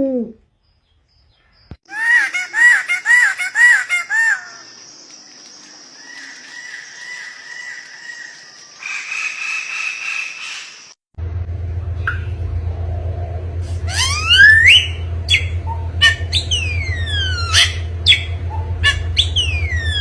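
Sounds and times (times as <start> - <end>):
bird calling: 1.9 - 11.0, 13.7 - 20.0.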